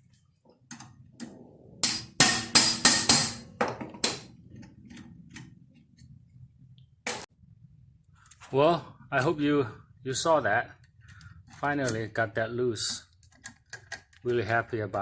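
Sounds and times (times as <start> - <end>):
hammer striking metal tool: 1.8 - 4.3.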